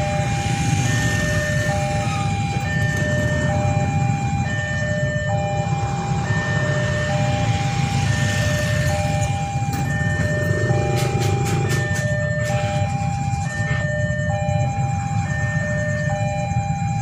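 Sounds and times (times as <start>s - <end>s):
two-tone warning siren: 0.0s - 17.0s
steady low rumble: 0.8s - 15.7s.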